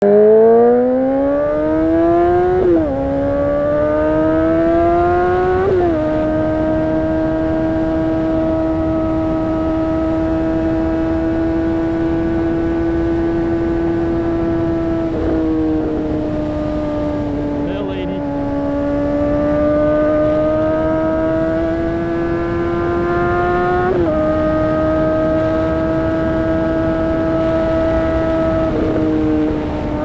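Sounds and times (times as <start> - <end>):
motorcycle engine accelerating: 0.0 - 30.0.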